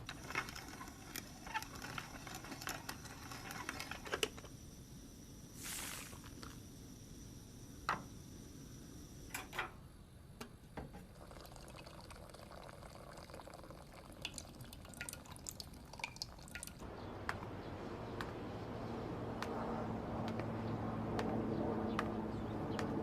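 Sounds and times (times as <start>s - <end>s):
water trickling: 11.1s - 16.8s.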